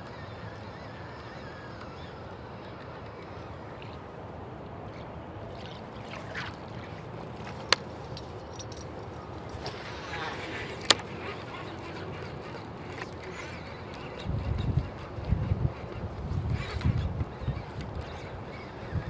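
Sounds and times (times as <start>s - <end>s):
river water: 0.0s - 19.0s
wind noise: 14.1s - 19.0s.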